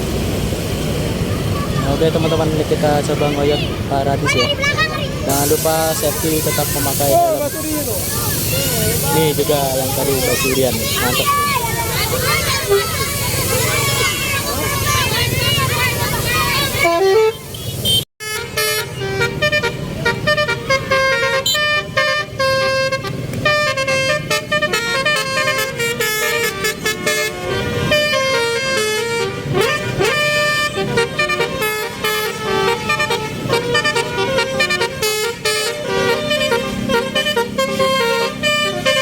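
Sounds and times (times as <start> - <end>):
road and engine noise: 0.0 - 39.0
multi-tone bus horn melodies: 12.2 - 13.1, 16.7 - 39.0.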